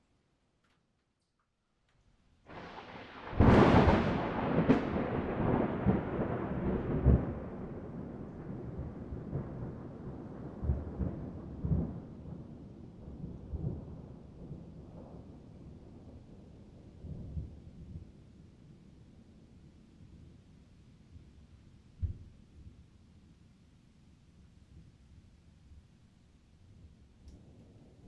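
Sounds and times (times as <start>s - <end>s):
thunder clap and rumble: 2.5s - 18.1s.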